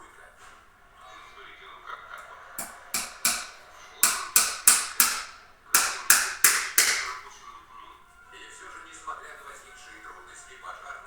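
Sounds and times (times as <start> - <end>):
sharp ringing knocks: 2.6 - 7.2.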